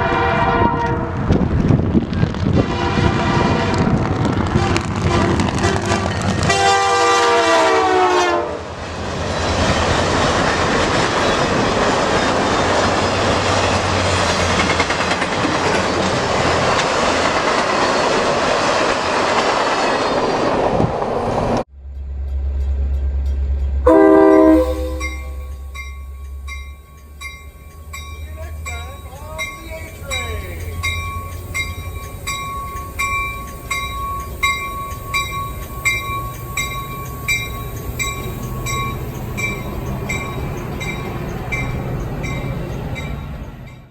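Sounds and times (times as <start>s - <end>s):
locomotive horn: 0.0s - 1.4s, 2.6s - 8.7s, 23.8s - 25.5s
train rumbling and rattling: 0.0s - 43.9s.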